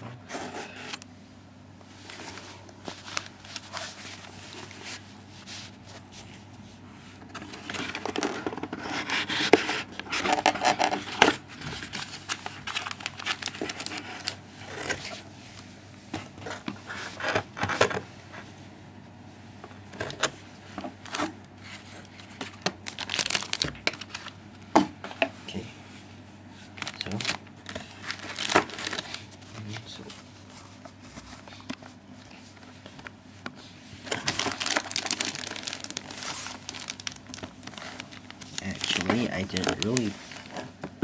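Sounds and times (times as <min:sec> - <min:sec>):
plastic wrapping crinkling: 0:02.0 - 0:05.0, 0:07.4 - 0:14.9, 0:22.0 - 0:24.4, 0:26.7 - 0:30.0, 0:34.0 - 0:40.8.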